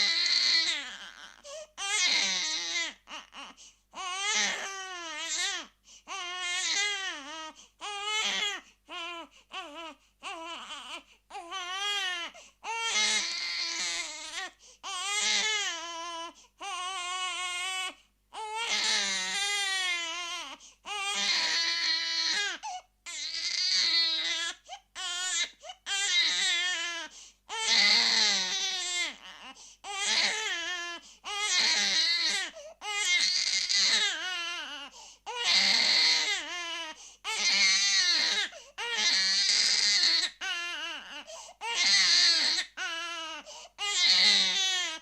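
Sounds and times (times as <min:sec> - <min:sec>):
baby crying and screaming: 0:00.0 - 0:03.0, 0:16.8 - 0:45.0.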